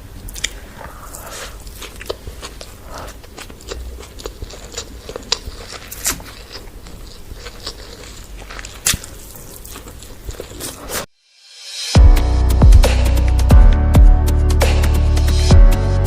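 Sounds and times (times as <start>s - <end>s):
person chewing crunchy food: 0.3s - 11.1s.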